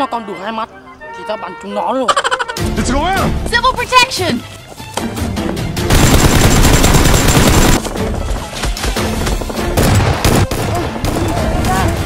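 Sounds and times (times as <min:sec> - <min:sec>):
background music: 0:00.0 - 0:12.0
automatic gunfire: 0:05.9 - 0:07.8.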